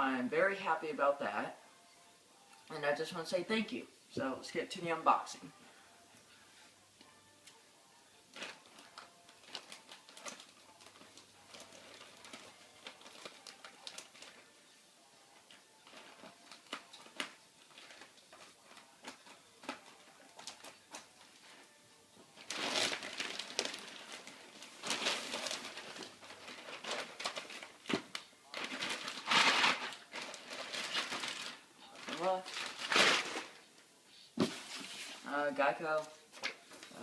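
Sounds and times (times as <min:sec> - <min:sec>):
paper and cardboard rustling: 0:22.4 - 0:33.6, 0:34.4 - 0:35.3.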